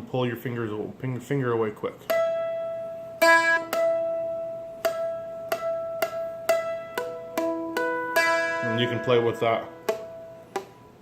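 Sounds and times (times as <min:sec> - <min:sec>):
plucked dulcimer notes: 0:02.0 - 0:11.0
sustained drone string: 0:04.8 - 0:10.7.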